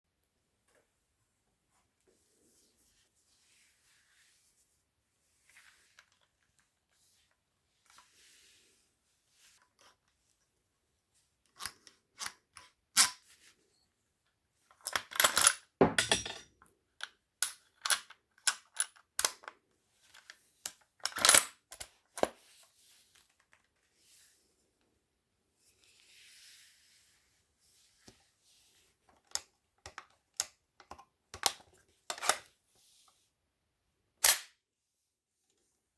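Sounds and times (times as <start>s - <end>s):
metallic clicks of rifles handled: 14.8s - 16.4s, 20.7s - 21.9s.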